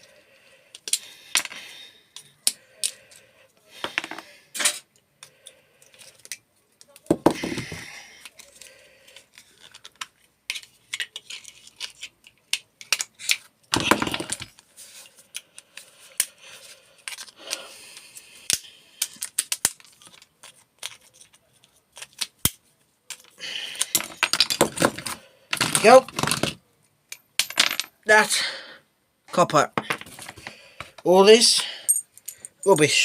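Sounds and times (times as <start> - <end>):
small metal parts clicking and rattling: 8.2 - 17.6, 18.4 - 22.5, 23.1 - 28.0, 31.5 - 33.0.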